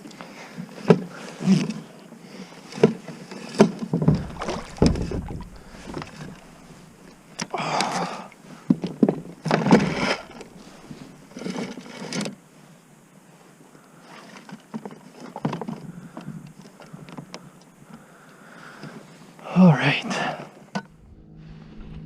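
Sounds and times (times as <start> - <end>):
knocks and scrapes on kayak: 2.8 - 7.6, 8.7 - 12.3.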